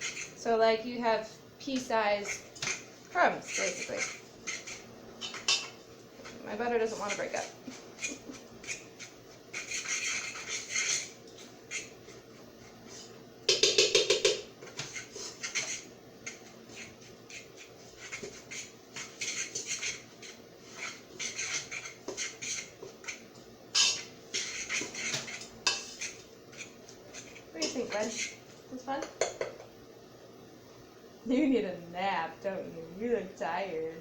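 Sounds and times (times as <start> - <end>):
metal fork scraping a mixing bowl: 0.0 - 0.4, 1.8 - 12.2, 12.9 - 28.4.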